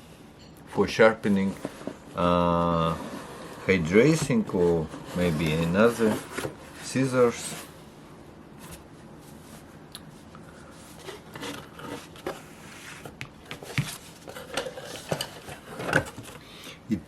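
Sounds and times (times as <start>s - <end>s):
cardboard box rubbing: 2.7s - 6.8s.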